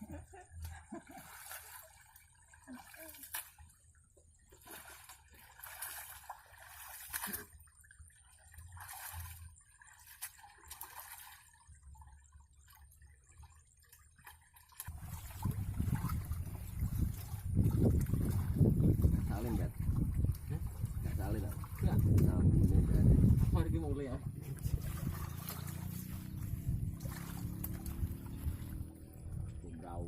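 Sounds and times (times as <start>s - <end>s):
small water splashes: 0.0s - 30.0s
water sloshing and trickling: 0.0s - 30.0s
low rumble: 14.9s - 21.0s, 22.2s - 30.0s.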